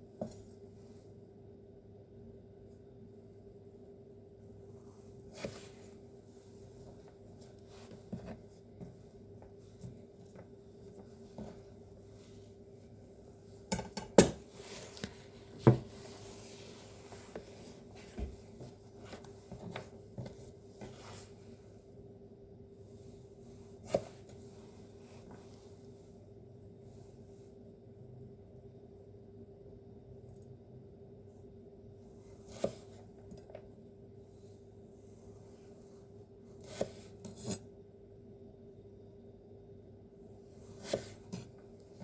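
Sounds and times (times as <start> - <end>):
faint steady hum: 0.0 - 42.0.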